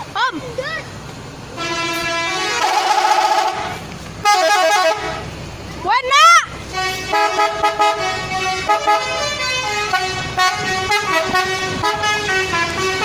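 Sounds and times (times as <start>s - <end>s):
musical bus air horns: 1.5s - 5.4s, 6.5s - 13.0s.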